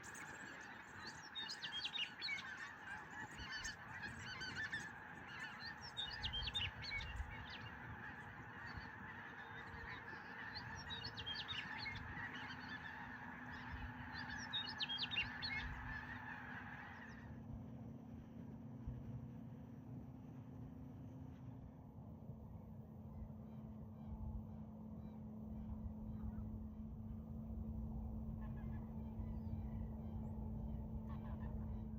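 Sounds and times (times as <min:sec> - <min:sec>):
flock of geese honking: 0:00.0 - 0:17.4, 0:27.6 - 0:31.9.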